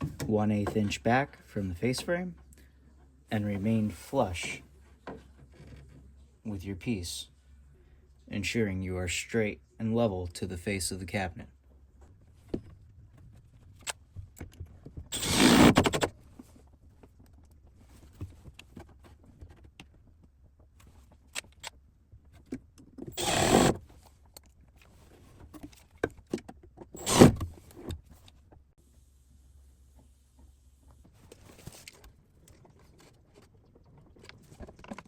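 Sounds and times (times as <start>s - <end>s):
cordless drill driving screws: 15.2s - 16.0s, 23.1s - 23.8s, 27.0s - 27.4s.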